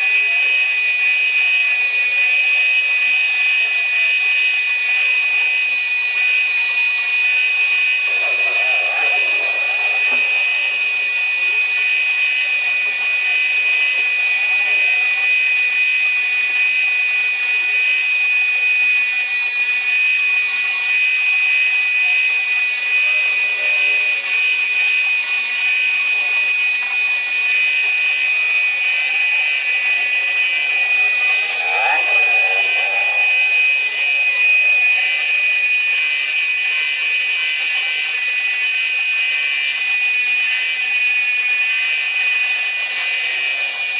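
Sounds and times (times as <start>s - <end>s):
router spindle whining: 7.4s - 15.7s, 21.9s - 38.0s.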